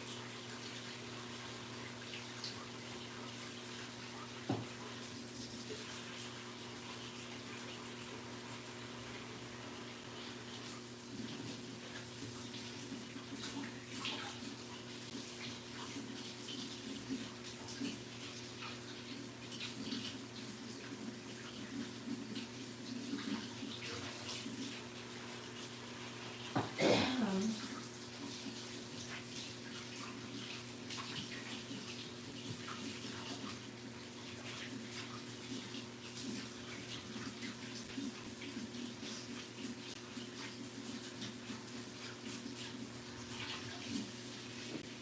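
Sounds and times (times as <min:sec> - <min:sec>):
tap water running into sink: 0:00.0 - 0:45.0
tap running into sink: 0:04.4 - 0:04.8, 0:26.5 - 0:26.9.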